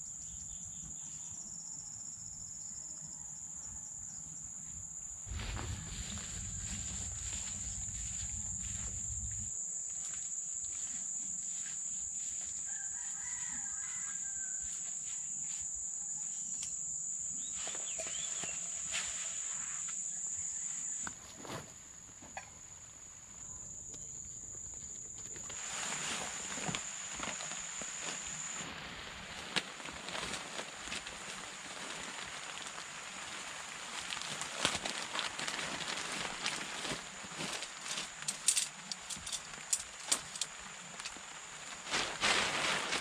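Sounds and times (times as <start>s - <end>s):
distant rooster crowing: 5.3s - 9.5s, 12.4s - 15.0s
high-pitched insect drone: 5.3s - 13.2s
hiss: 25.5s - 34.4s.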